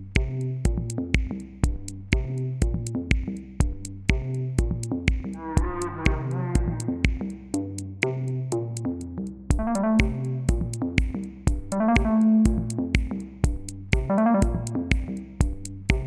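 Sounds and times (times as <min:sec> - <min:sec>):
drum machine beat: 0:00.0 - 0:16.0
synthesizer notes: 0:05.4 - 0:07.1, 0:09.6 - 0:10.8, 0:11.7 - 0:13.0, 0:14.0 - 0:15.1.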